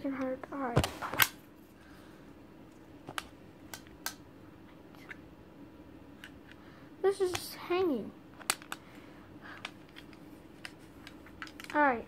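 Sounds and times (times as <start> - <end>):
faint steady hum: 0.0 - 12.0
plastic toy pieces clicking: 11.4 - 11.8.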